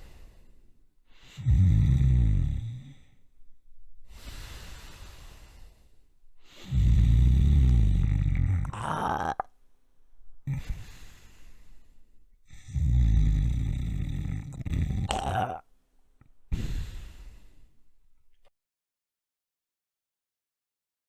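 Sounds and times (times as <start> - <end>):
soft breath: 0.0 - 1.5, 2.8 - 7.1, 10.4 - 12.7, 16.5 - 18.0
person snoring: 1.4 - 3.2, 6.6 - 9.5, 10.5 - 11.2, 12.5 - 15.6.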